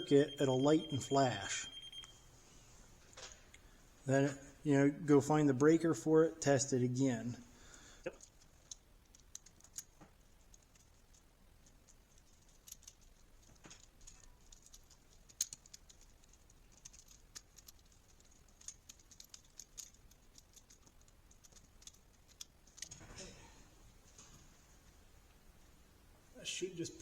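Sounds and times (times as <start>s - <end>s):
faint irregular clicks: 7.8s - 23.1s.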